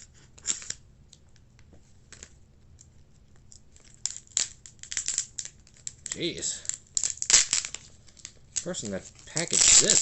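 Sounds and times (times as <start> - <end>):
packaging crinkling and rustling: 3.4 - 10.0
tape ripping: 3.8 - 10.0.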